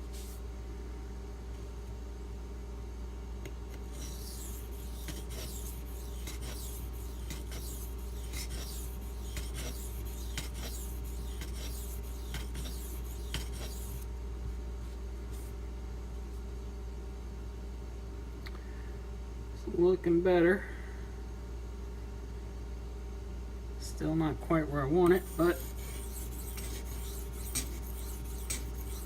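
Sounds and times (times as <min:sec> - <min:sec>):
steady low hum: 0:00.0 - 0:29.0
knife rasping on sharpening stone: 0:04.0 - 0:14.0, 0:25.3 - 0:29.0.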